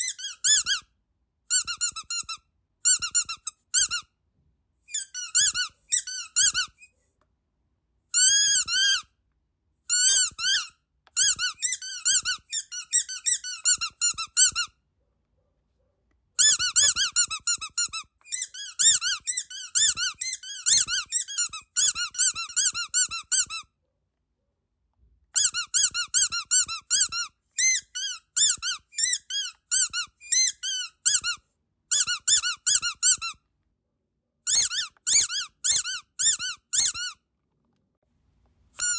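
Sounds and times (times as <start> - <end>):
squeaky dog toy squeaking: 0.0 - 0.9, 1.5 - 4.2, 4.9 - 7.0, 8.1 - 9.2, 9.8 - 14.8, 16.4 - 23.8, 25.4 - 33.5, 34.4 - 37.3.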